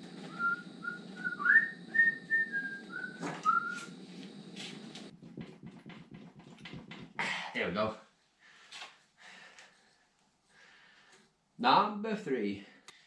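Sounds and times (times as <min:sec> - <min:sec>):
person whistling a tune: 0:00.2 - 0:03.9.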